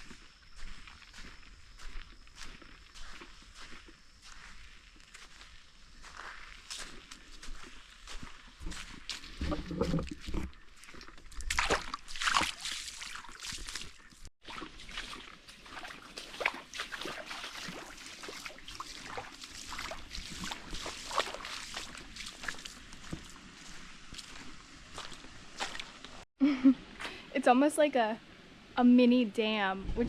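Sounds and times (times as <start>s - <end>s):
water splashing over small dam: 11.4s - 24.4s.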